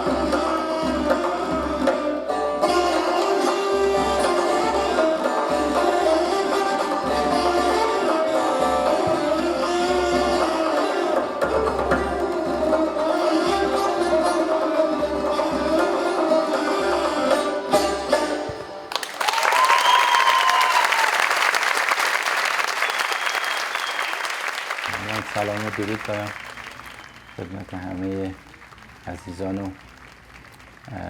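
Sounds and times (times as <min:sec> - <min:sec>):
lute flute and drum trio: 0:00.0 - 0:18.7, 0:19.3 - 0:21.2
audience applause: 0:18.9 - 0:31.0.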